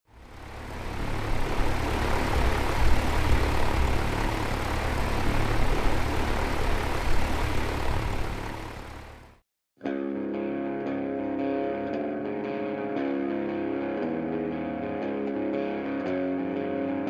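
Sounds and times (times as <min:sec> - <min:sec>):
propeller aircraft humming: 0:00.1 - 0:09.4.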